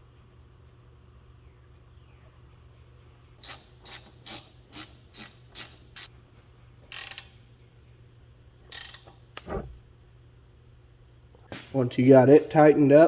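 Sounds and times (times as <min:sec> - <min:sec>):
hand ratchet clicking: 0:03.4 - 0:06.1, 0:06.9 - 0:07.3, 0:08.7 - 0:09.1.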